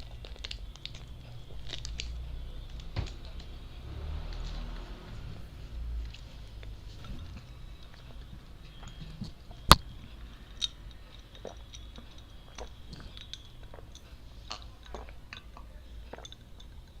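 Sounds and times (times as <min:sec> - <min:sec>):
chewing candy clicks: 0:00.0 - 0:03.5, 0:10.5 - 0:17.0.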